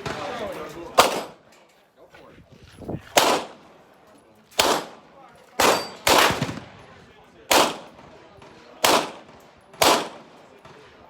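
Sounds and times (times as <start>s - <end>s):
gunshots with echo: 0.0s - 1.4s, 3.2s - 3.7s, 4.6s - 6.9s, 7.5s - 11.0s.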